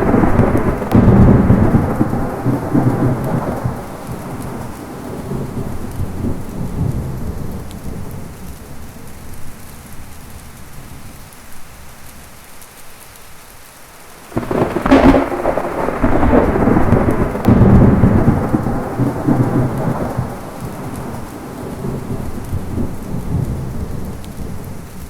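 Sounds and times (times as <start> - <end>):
sharp thunderclap: 0.0 - 8.9, 14.3 - 24.8
thunder rumbling: 0.0 - 12.5, 14.2 - 25.0
rain: 0.0 - 25.0.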